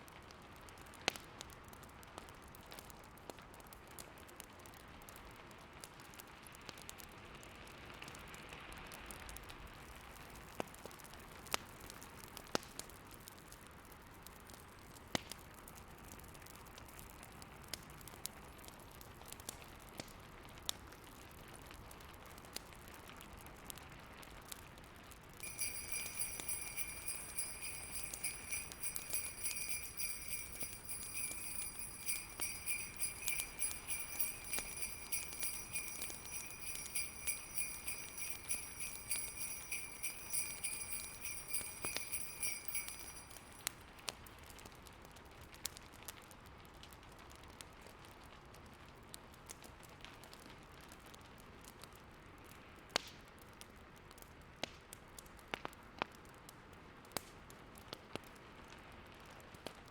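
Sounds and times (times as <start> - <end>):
fireplace crackling and popping: 25.4 - 43.7
sleigh bells jingling: 25.4 - 43.7.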